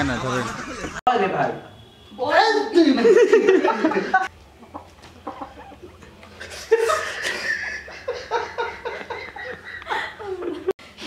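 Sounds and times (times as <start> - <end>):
men laughing: 0.4 - 1.0, 2.9 - 4.3, 5.2 - 10.8.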